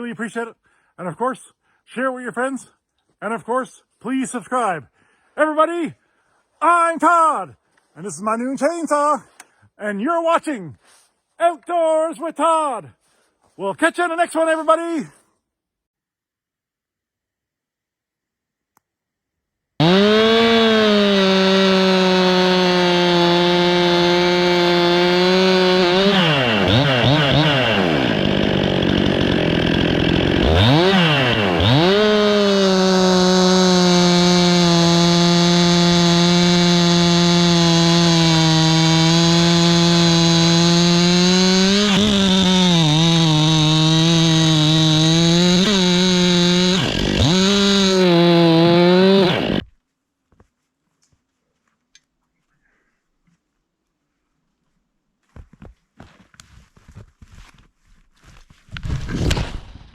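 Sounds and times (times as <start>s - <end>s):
chainsaw running at high revs: 19.8s - 49.6s.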